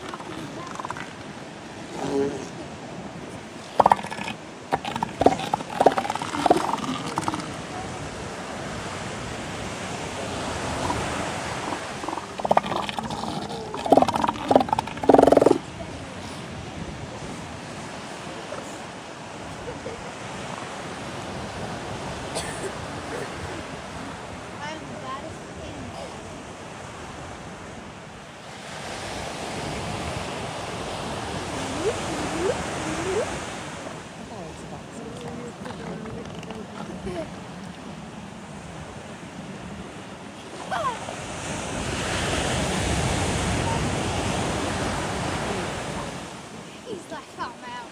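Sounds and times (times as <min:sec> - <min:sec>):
seals calling: 0:00.0 - 0:26.6, 0:29.6 - 0:47.9
ocean surf washing on shore: 0:00.0 - 0:47.9
steady surf: 0:36.8 - 0:47.9.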